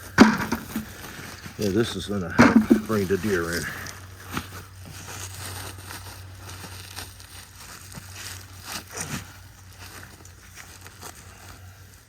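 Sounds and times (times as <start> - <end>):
apples knocking: 0.0 - 1.1, 2.2 - 3.3
bag crinkling and rustling: 0.0 - 12.0.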